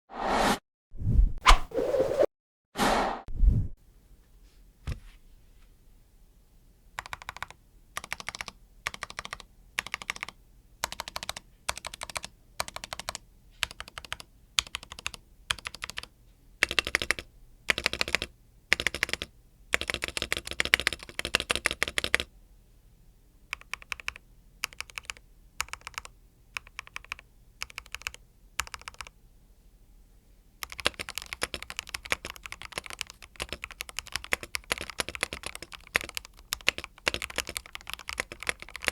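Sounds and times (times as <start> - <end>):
mechanical keyboard typing: 7.0 - 22.3, 23.5 - 29.1, 30.6 - 38.9.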